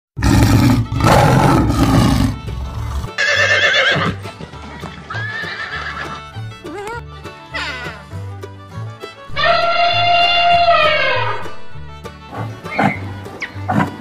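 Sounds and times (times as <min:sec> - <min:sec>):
background music with bass line: 0:00.2 - 0:03.2, 0:04.1 - 0:14.0
horse neighing: 0:00.2 - 0:04.2, 0:05.1 - 0:06.2, 0:09.3 - 0:11.6.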